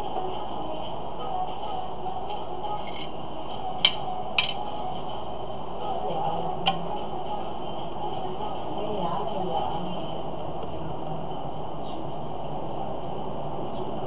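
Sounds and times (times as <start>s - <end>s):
steady background hum: 0.0s - 14.0s
small hard parts clicking: 2.8s - 3.1s, 3.8s - 4.6s.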